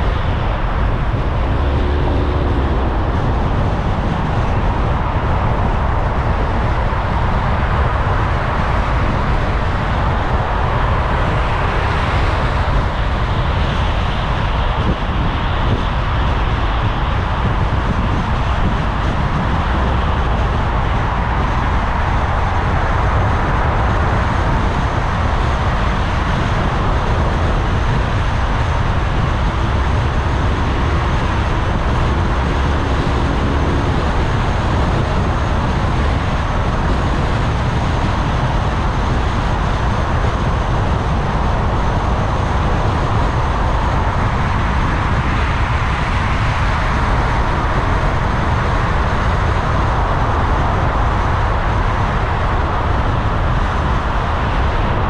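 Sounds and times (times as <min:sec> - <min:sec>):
car road noise: 0:00.0 - 0:55.0
tyres and engine rumbling: 0:00.0 - 0:55.0.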